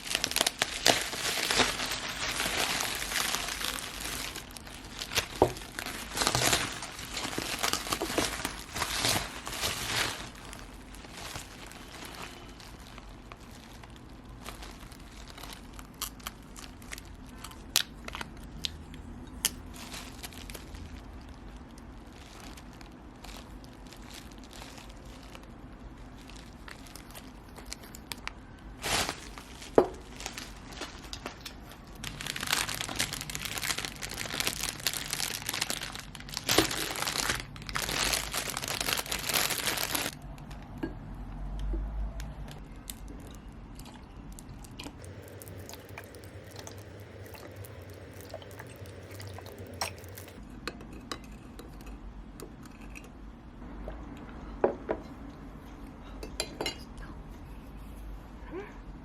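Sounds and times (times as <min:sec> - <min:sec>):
packaging crinkling and tearing: 0:00.0 - 0:40.8, 0:44.4 - 0:50.4.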